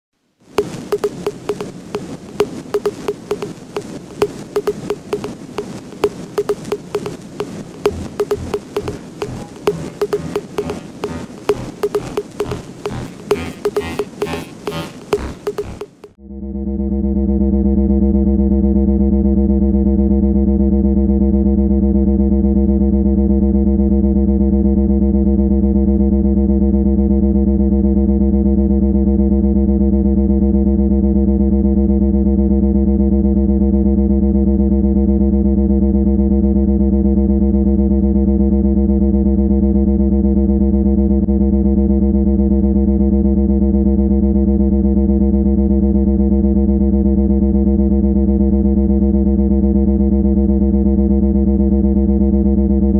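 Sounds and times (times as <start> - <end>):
steady buzzing tone: 0.5 - 16.1.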